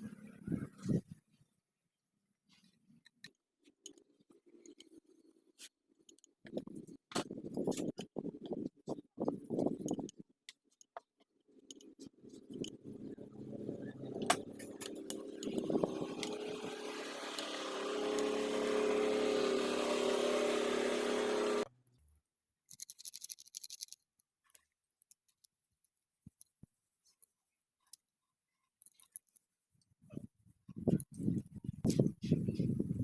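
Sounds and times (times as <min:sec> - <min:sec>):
machine humming: 0:12.4 - 0:21.7.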